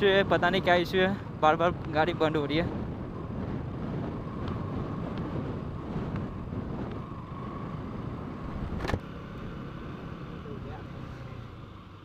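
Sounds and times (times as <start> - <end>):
wind noise on microphone: 0.0 - 9.1.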